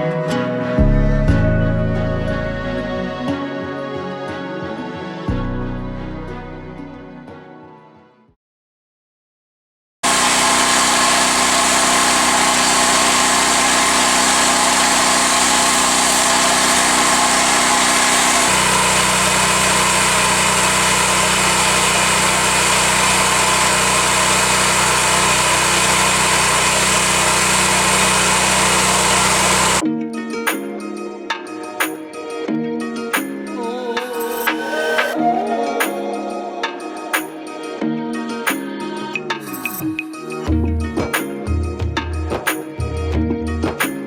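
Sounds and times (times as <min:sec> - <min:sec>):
pressure washer engine running: 0:10.0 - 0:29.8
loud hiss of spray: 0:10.1 - 0:29.8.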